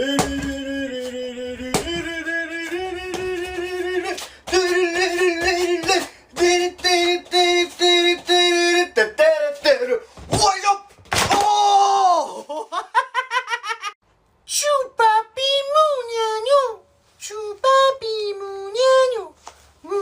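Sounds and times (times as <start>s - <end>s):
person singing: 0.0s - 10.0s, 14.5s - 20.0s.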